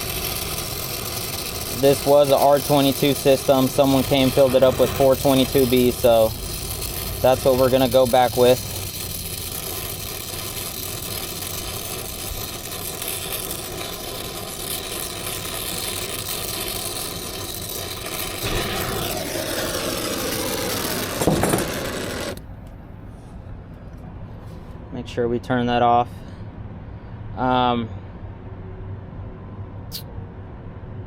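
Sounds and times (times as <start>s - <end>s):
torch flame hissing: 0.0s - 22.5s
sharp knock: 21.2s - 21.8s.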